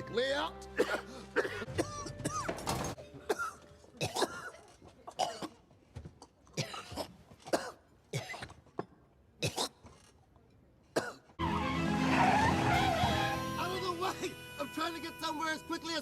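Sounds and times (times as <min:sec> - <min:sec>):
man coughing: 0:00.8 - 0:02.6, 0:03.3 - 0:05.6.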